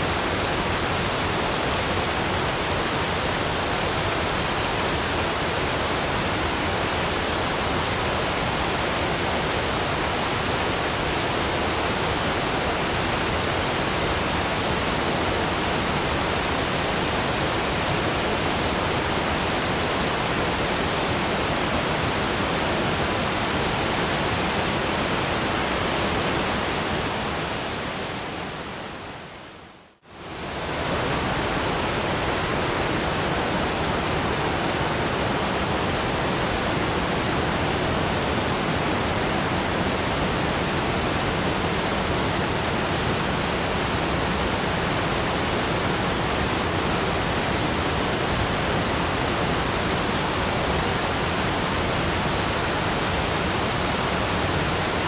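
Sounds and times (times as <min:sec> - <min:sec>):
waterfall rushing noise: 0:00.0 - 0:55.0.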